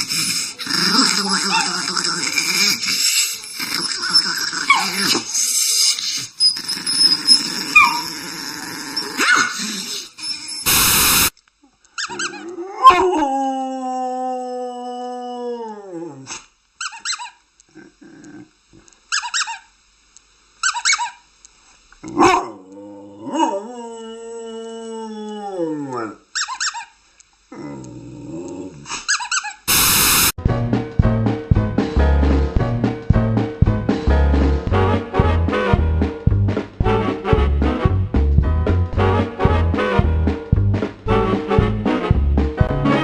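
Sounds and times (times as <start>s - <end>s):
dog barking: 22.2s - 22.6s.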